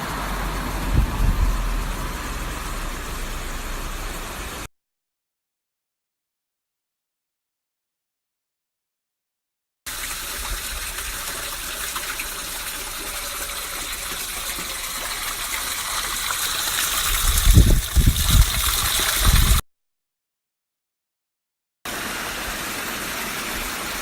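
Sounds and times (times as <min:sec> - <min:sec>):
water rushing: 0:00.0 - 0:04.7, 0:09.9 - 0:19.6, 0:21.9 - 0:24.0.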